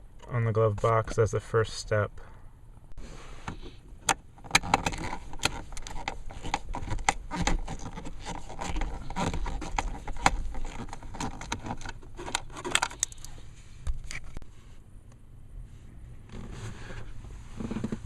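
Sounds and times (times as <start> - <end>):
plastic scraping and rustling: 4.4 - 14.4, 16.2 - 18.0.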